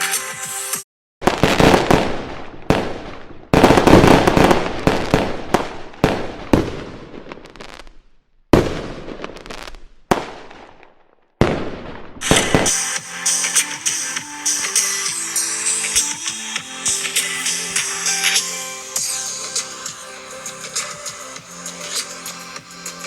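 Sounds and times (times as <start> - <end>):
fireworks bangs: 1.2 - 23.0.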